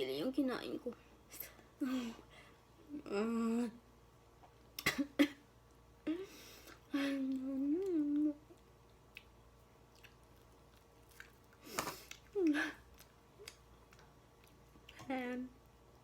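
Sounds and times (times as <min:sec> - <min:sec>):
person chewing noodles: 0:06.7 - 0:15.0.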